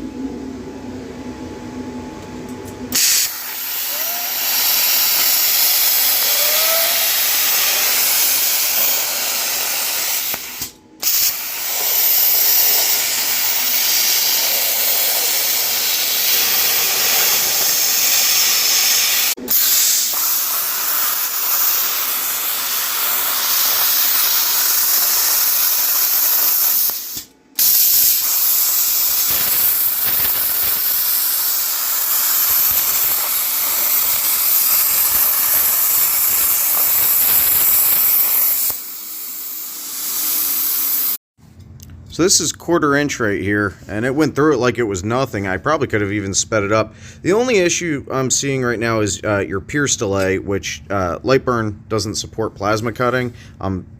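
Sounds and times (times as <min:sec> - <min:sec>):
steady hum with tones: 0:00.0 - 0:37.8
plasma cutter arc hissing: 0:02.9 - 0:41.2.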